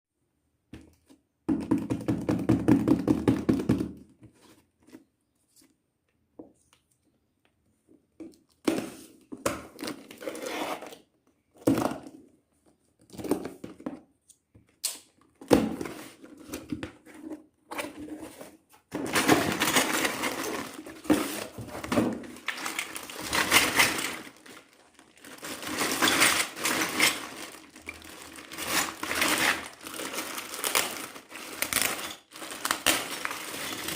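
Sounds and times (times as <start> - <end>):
plastic wrap crinkling: 19.0 - 33.9
packaging tearing: 19.1 - 21.6, 22.2 - 33.9.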